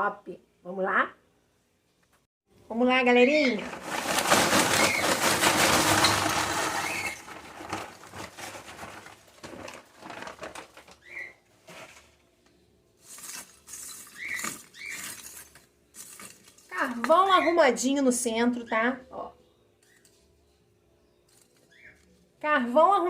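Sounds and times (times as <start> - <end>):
charcoal lumps tumbling and clinking: 3.3 - 12.2, 13.0 - 17.4.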